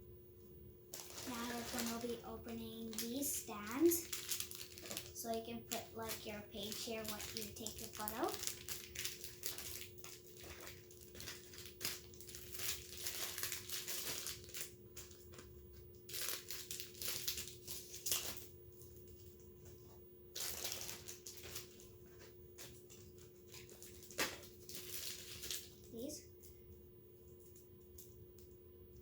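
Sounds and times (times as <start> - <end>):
faint steady hum: 0.0 - 29.0
packaging crinkling and tearing: 0.9 - 15.5, 16.1 - 18.5, 20.3 - 26.1.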